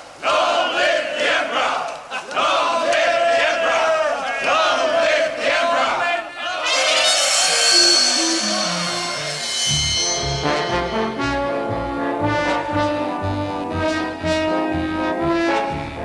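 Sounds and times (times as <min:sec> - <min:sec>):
orchestral brass music: 0:06.5 - 0:16.0.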